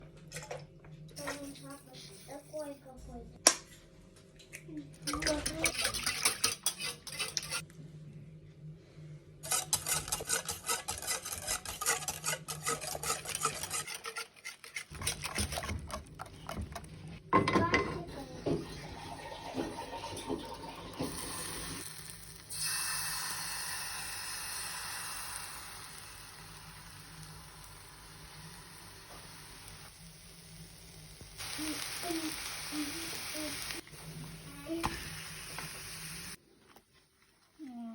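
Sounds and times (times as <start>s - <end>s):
metal utensil whisking in a bowl: 5.0s - 7.6s, 9.4s - 17.2s
oil sizzling in a pan: 18.1s - 36.4s.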